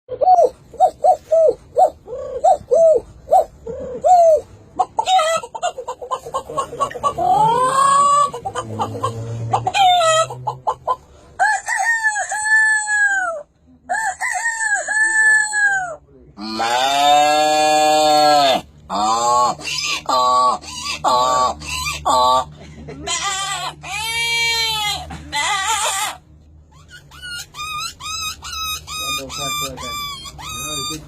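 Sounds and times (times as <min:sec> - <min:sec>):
chicken clucking: 0:03.5 - 0:14.0
rooster crowing: 0:11.4 - 0:16.0.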